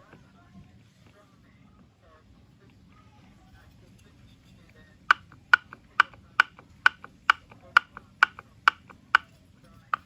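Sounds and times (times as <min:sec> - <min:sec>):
sharp mechanical clicks: 0:05.1 - 0:09.2.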